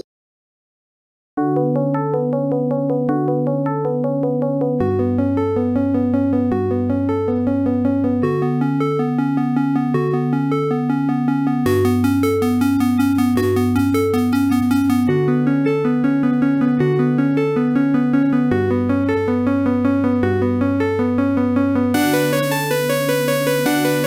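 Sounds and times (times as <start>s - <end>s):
synthesized ringtone melody: 11.7s - 15.1s, 22.0s - 24.0s
synthesized tune: 22.0s - 24.0s.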